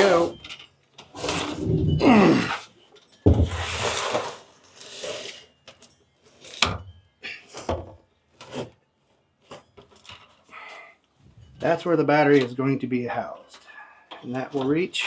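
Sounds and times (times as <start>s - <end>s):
rustle and scrape: 1.0s - 6.6s.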